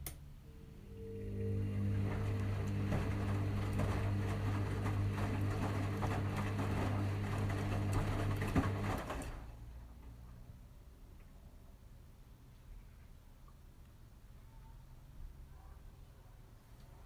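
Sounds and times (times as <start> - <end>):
washing machine motor humming: 0.4 - 9.6.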